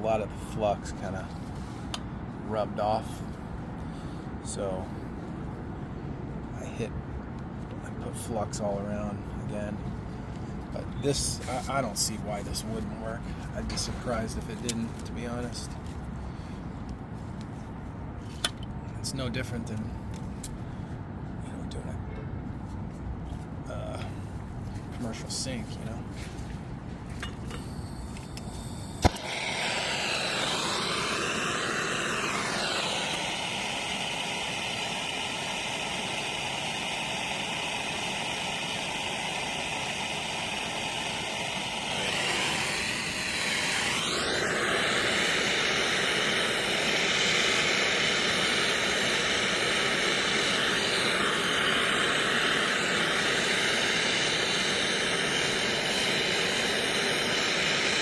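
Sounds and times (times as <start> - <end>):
torch igniter click: 27.6 - 58.0
torch flame hissing roar: 28.5 - 58.0.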